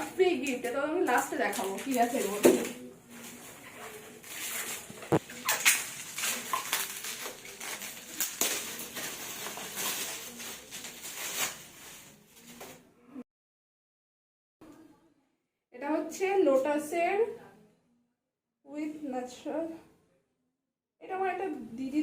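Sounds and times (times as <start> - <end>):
packaging crinkling and rustling: 0.4 - 12.8.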